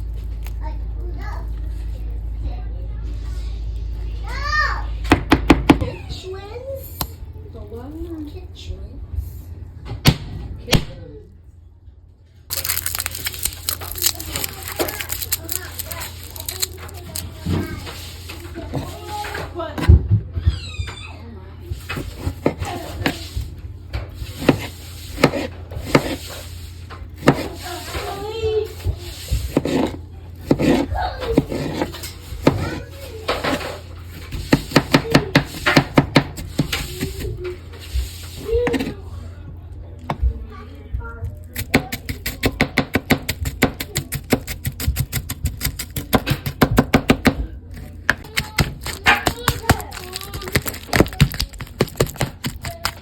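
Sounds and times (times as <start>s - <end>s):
blade rubbing on wood: 12.5s - 19.2s, 24.2s - 28.2s, 28.8s - 39.0s, 47.8s - 53.0s
knife chopping on wooden board: 24.4s - 26.2s, 29.5s - 32.7s, 41.6s - 47.4s, 48.1s - 53.0s.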